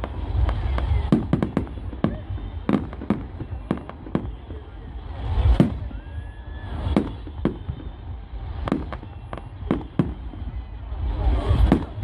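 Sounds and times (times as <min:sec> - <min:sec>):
fireworks deep boom: 0:00.0 - 0:12.0
fireworks sharp bangs: 0:00.0 - 0:12.0.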